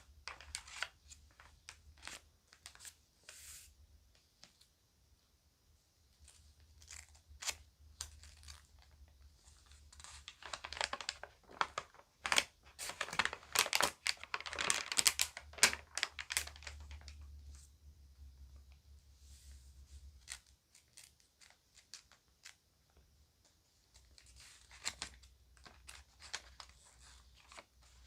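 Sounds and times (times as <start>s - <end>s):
magazine pages rustling: 0.0s - 3.7s, 6.2s - 17.6s, 23.8s - 28.0s.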